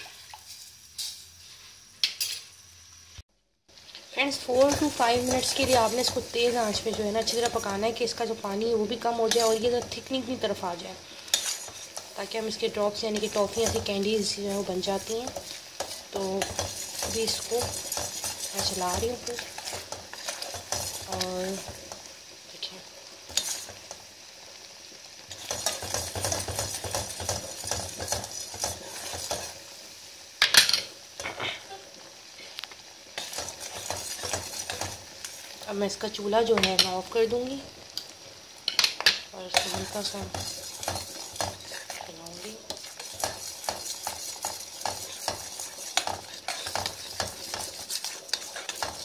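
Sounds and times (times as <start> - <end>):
steady high hiss: 0.0 - 49.0
syrup boiling: 3.7 - 29.9, 31.7 - 49.0
spoon scraping a pot: 9.2 - 10.0, 11.2 - 21.7, 23.3 - 23.8, 25.3 - 29.6, 33.2 - 35.5, 38.7 - 49.0.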